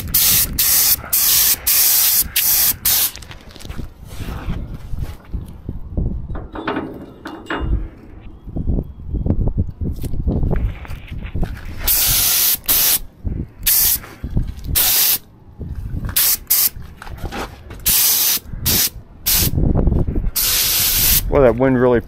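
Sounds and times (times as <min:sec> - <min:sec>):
spray gun hissing: 0:00.0 - 0:03.2, 0:11.9 - 0:13.0, 0:17.9 - 0:19.5, 0:20.4 - 0:21.2
wind rumble on microphone: 0:00.0 - 0:22.0.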